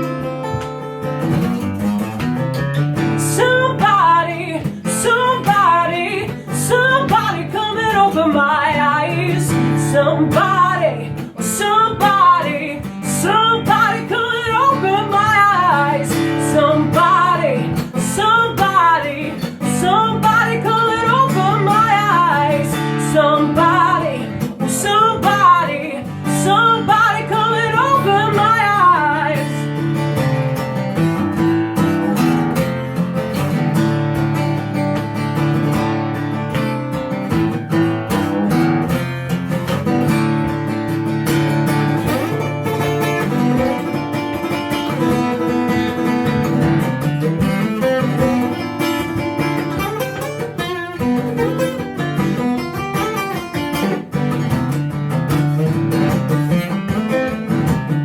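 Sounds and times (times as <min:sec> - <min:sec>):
strummed guitar: 0:00.0 - 0:58.0
person singing: 0:03.2 - 0:29.9.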